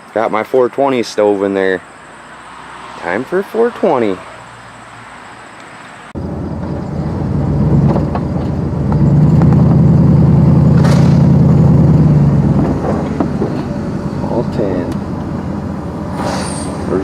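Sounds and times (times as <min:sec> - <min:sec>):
truck engine pulling away: 0:06.2 - 0:17.0
sharp knock or rattle: 0:10.7 - 0:11.3.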